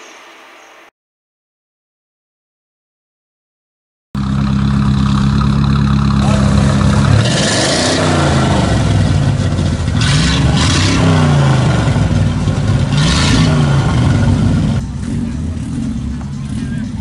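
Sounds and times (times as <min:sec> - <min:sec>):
exhaust crackle: 0:04.2 - 0:17.0
sports car engine revving: 0:04.2 - 0:17.0.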